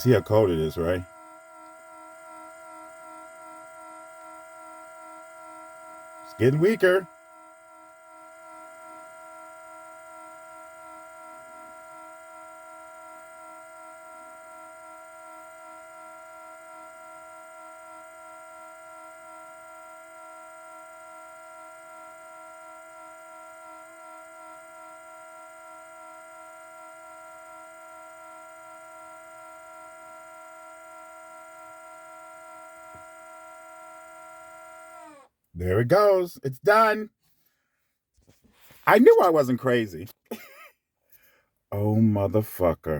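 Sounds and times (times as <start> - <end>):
steady electric hum: 0.0 - 37.1, 38.6 - 40.6.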